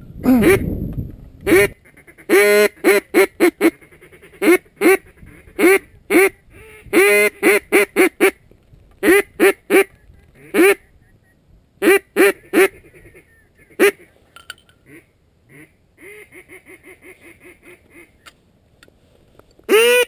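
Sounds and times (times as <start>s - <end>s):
mallard quacking: 1.5s - 8.4s, 11.8s - 14.1s.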